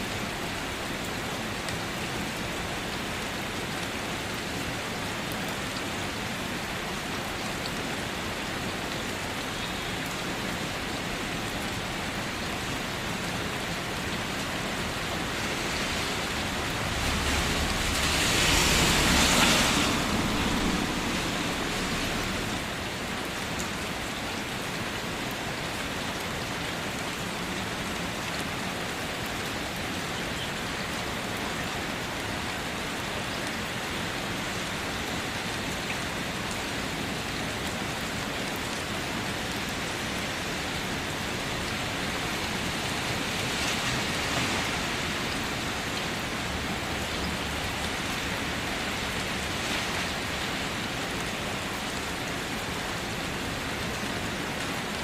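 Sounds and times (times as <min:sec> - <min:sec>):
rain on a car roof: 0:00.0 - 0:55.0
low rumble: 0:15.9 - 0:22.7.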